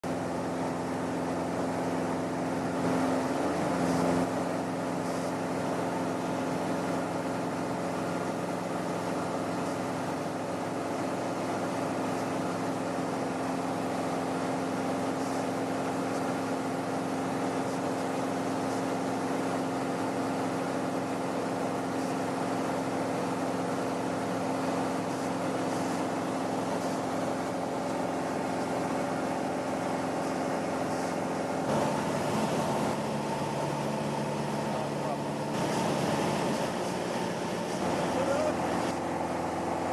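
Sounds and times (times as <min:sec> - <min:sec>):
aircraft engines droning: 0:24.0 - 0:39.9.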